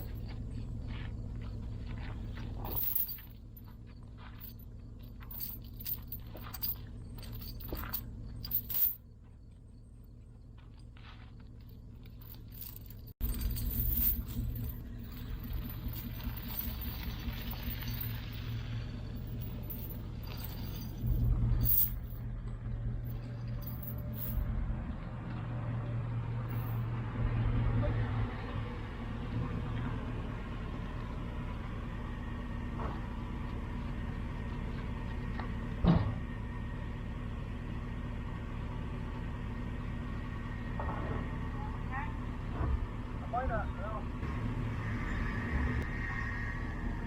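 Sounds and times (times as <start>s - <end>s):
truck engine idling: 0.0s - 47.0s
loud clunk: 35.4s - 36.3s.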